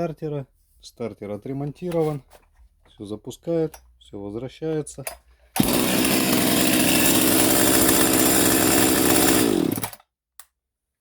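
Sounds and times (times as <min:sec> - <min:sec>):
chainsaw engine spinning down: 0:05.6 - 0:10.0.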